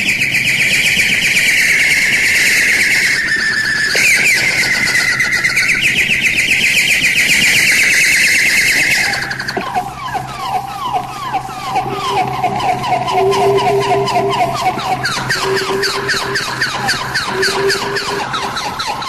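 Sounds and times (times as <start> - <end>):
shrill bird trill: 8.0 - 19.0
falling bird calls: 8.1 - 19.0
steady held tone: 8.9 - 19.0.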